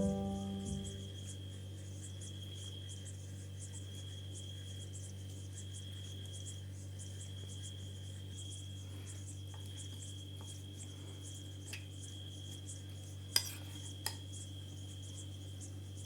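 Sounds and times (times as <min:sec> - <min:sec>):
thin steady high tone: 0:00.0 - 0:03.2
constant low hum: 0:00.0 - 0:16.0
insect chirping: 0:00.0 - 0:16.0.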